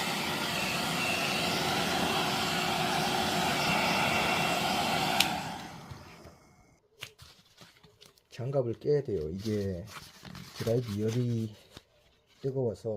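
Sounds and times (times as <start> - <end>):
hair dryer blowing: 0.0 - 6.7
hair dryer switch click: 5.0 - 6.0.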